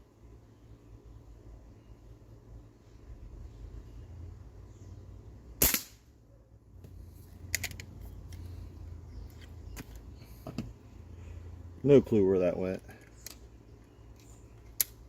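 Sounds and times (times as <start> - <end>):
airsoft pistol shot: 5.6 - 6.0.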